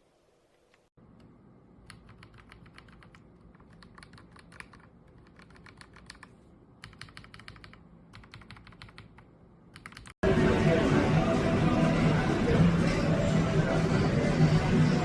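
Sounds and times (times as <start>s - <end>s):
mechanical keyboard typing: 1.9s - 10.2s.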